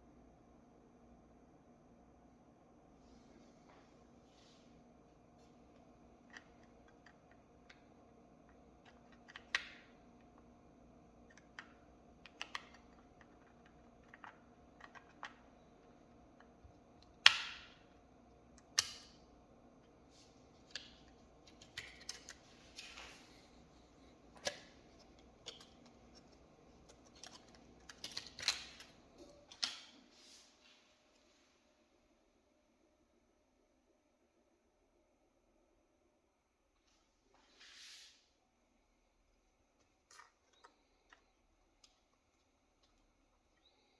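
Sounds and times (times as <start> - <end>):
faint steady hum: 0.0 - 43.9
small clicks and taps of parts: 6.2 - 10.5, 11.3 - 15.5.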